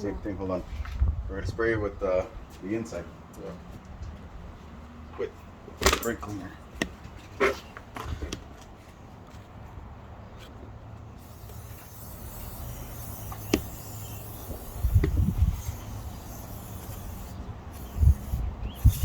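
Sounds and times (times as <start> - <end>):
aerosol spray hissing: 11.2 - 19.0.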